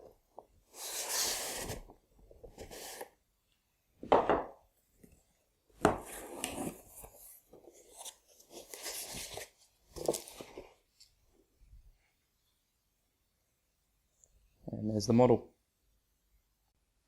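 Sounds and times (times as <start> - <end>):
cardboard and foam scraping: 0.7 - 1.9.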